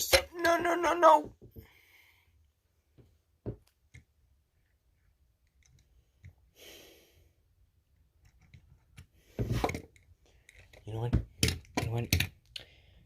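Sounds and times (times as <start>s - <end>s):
soft breath: 1.6s - 2.6s, 6.5s - 7.4s
faint clicks and taps: 2.9s - 4.2s.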